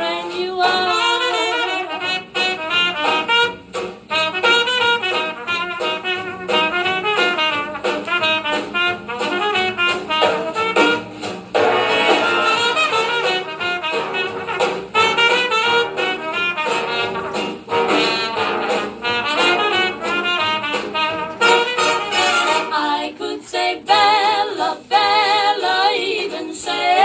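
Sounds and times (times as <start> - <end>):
jazz band with brass and saxophones: 0.0 - 24.4.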